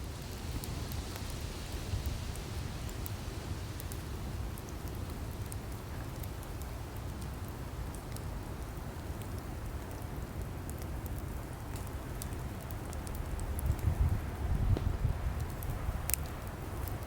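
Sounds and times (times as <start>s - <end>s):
wood crackling and popping: 0.4s - 17.0s
fire rushing: 7.8s - 17.0s.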